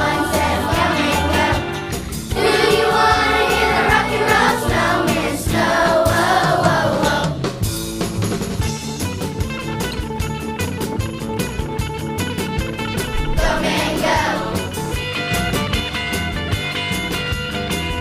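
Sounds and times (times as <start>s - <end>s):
children's choir singing: 0.0s - 7.5s, 13.1s - 15.0s
steady drum beat: 0.0s - 17.6s
instrumental accompaniment: 0.0s - 18.0s.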